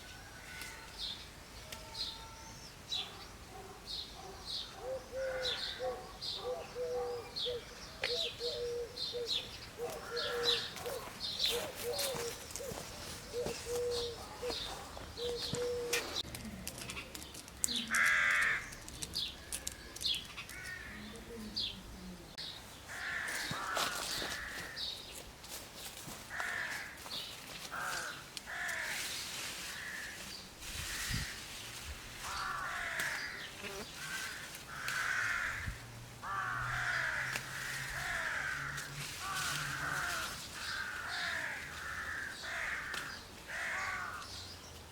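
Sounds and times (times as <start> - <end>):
crows cawing: 0.4 - 1.0, 5.1 - 5.9, 9.8 - 10.8, 17.9 - 18.7, 20.5 - 21.1, 22.9 - 24.9, 26.3 - 30.3, 32.2 - 44.4
small birds chirping: 0.6 - 25.3.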